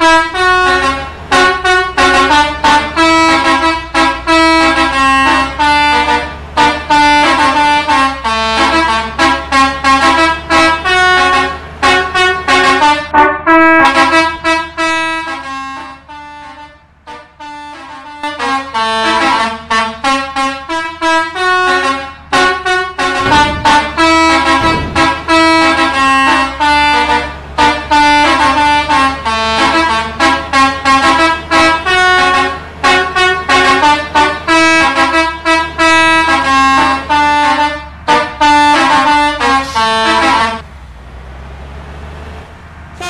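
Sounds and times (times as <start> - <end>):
multi-tone bus air horns: 0.0 - 40.6.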